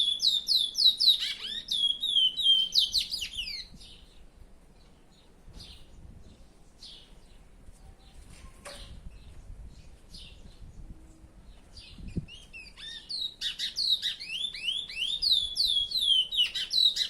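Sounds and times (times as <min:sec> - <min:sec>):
finch singing whistles: 0:00.0 - 0:04.0, 0:11.8 - 0:17.0.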